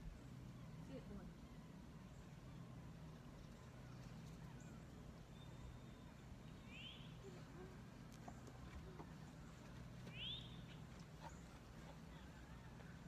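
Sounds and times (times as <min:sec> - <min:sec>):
low steady hum: 0:00.0 - 0:13.0
faint high chirp: 0:03.9 - 0:07.7, 0:09.5 - 0:12.8.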